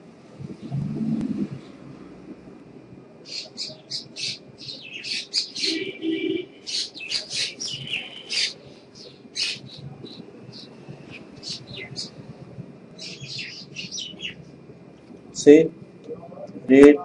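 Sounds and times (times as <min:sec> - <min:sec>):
bird chirping and squawking: 0:03.3 - 0:09.8, 0:10.5 - 0:12.2, 0:13.0 - 0:14.4.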